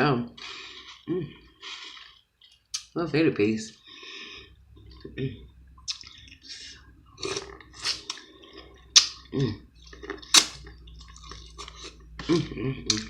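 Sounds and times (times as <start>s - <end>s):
wet chewing and lip-smacking: 5.8s - 13.0s
sharp smacks: 10.3s - 10.6s.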